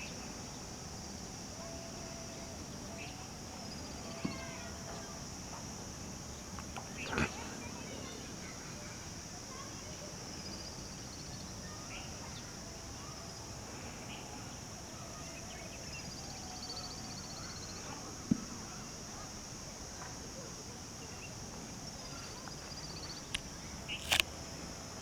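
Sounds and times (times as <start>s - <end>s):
faint bird chirps: 15.2s - 17.8s
sharp click: 23.3s - 24.3s
loud short sounds: 23.9s - 24.2s.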